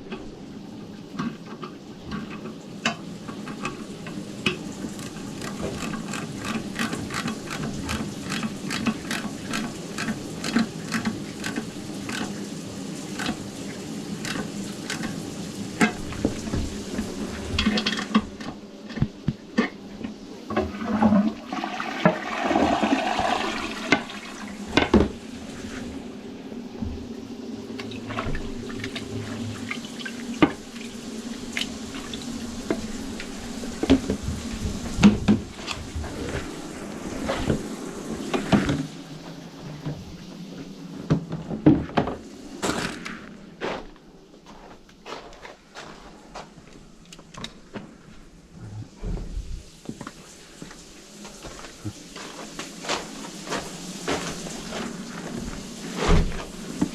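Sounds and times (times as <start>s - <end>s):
water gurgling through drain: 20.3s - 40.7s.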